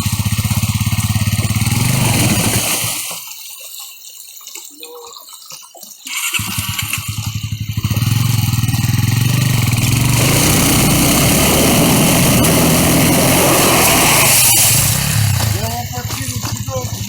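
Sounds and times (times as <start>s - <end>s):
motorcycle engine revving: 0.0s - 3.0s, 6.1s - 17.0s.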